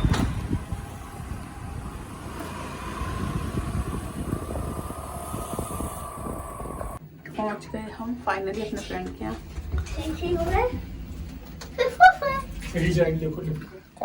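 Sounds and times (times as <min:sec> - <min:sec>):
vehicle rumble and road noise: 0:00.0 - 0:07.0.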